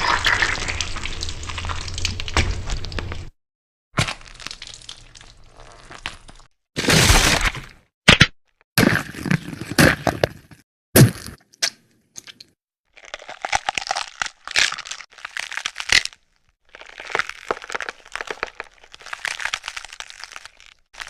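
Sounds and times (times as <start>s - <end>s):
dense crunching and crackling: 0.0s - 3.4s, 4.0s - 7.9s, 13.0s - 21.0s
bone cracking: 4.0s - 8.4s, 11.0s - 21.0s.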